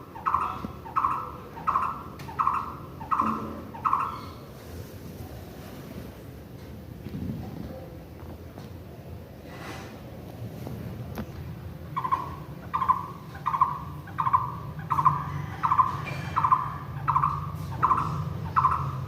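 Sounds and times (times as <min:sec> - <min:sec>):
bird calling repeatedly: 0:00.0 - 0:04.4, 0:11.9 - 0:19.0
steady low hum: 0:00.0 - 0:19.0.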